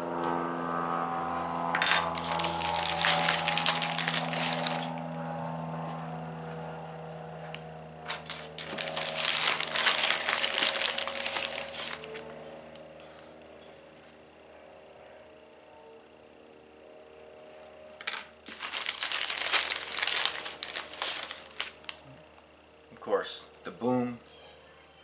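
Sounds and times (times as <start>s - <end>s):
low hum: 0.0s - 22.8s
plastic parts clattering: 8.1s - 12.2s, 18.0s - 21.7s.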